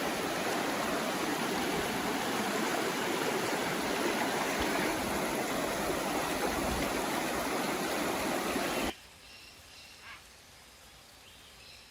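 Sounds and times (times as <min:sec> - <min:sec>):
rushing river water: 0:00.0 - 0:09.0.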